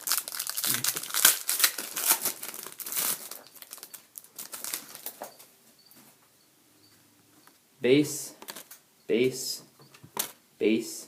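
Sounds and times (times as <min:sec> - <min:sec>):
foil wrapper crinkling: 0:00.0 - 0:05.3.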